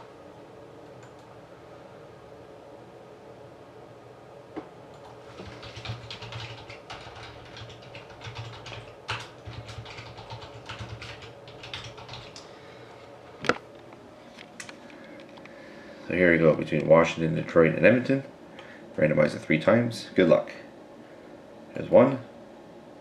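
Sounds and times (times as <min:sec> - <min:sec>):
typing on computer keyboard: 0:05.0 - 0:12.5.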